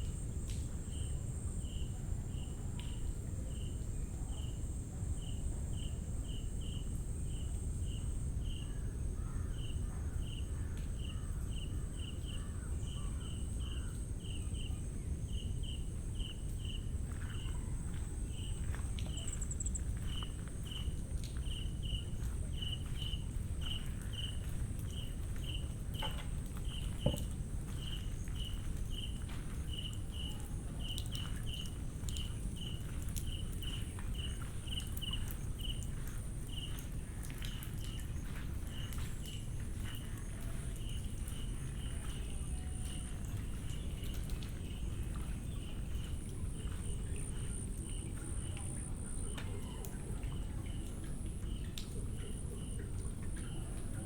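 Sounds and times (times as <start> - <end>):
insect chirps: 5.2 - 48.8
footsteps on wet forest floor: 16.2 - 49.5.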